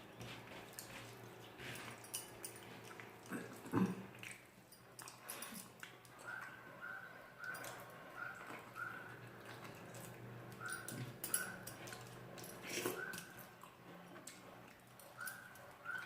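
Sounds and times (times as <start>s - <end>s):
person chewing food: 0.1s - 6.5s, 8.4s - 16.0s.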